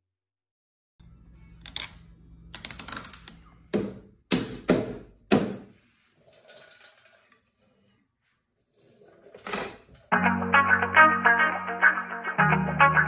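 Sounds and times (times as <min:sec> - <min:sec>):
wooden parts clicking: 0:01.6 - 0:03.5
sharp wooden knocks: 0:03.7 - 0:05.7.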